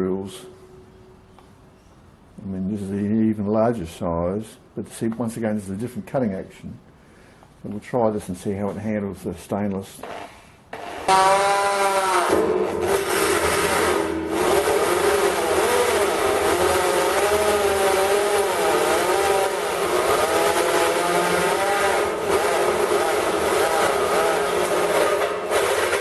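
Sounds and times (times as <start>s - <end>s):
electric drill whining: 10.0s - 26.0s.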